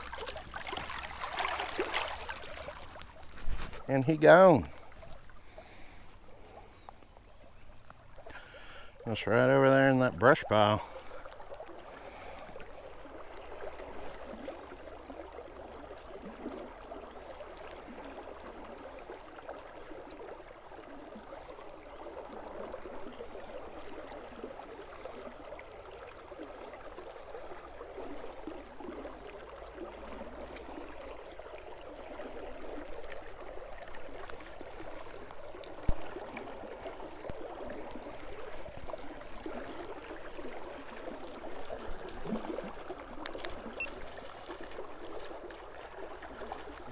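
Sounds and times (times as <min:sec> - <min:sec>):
river water flowing: 0:00.0 - 0:46.9.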